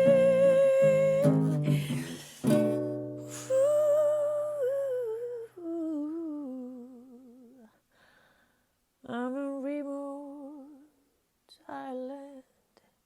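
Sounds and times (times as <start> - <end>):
acoustic guitar chords: 0.0 - 4.5
person humming melody: 0.0 - 7.8.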